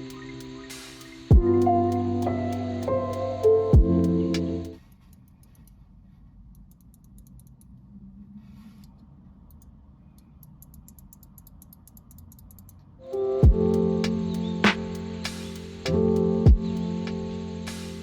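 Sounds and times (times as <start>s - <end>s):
soft hiss: 14.0s - 18.0s.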